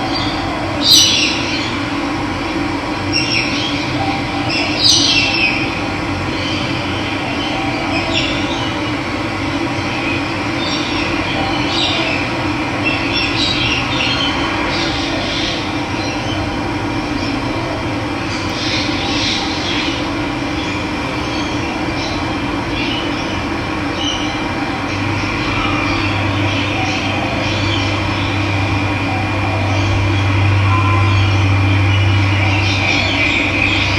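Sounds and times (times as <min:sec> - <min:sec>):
birds chirping: 0:00.0 - 0:01.9, 0:18.2 - 0:33.9.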